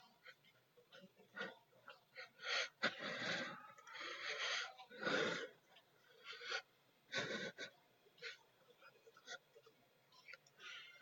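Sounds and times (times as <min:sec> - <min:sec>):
person breathing heavily: 0:01.3 - 0:08.4.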